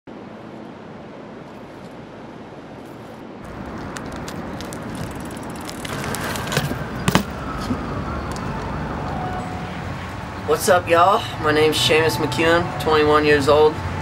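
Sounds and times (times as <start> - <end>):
street traffic noise: 0.1 - 14.0
faint siren wail: 6.7 - 14.0.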